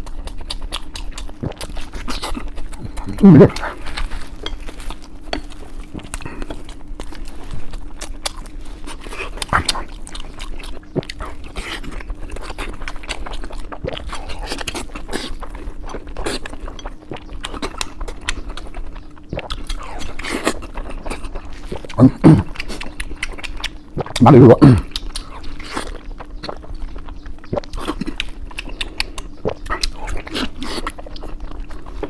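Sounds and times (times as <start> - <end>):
chewing and crunching food: 0.0 - 32.0
faint steady hum: 0.0 - 32.0
mouth clicks: 21.8 - 25.4.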